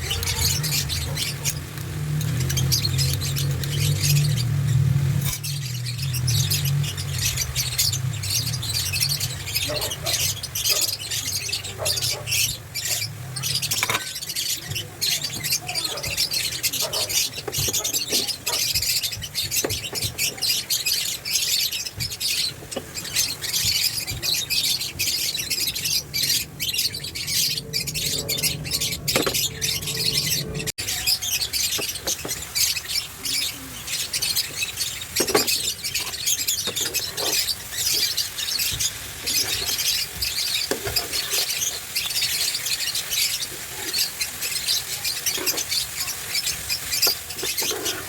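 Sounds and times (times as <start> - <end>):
vegetable sizzling in hot oil: 0.0 - 9.6, 30.9 - 48.0.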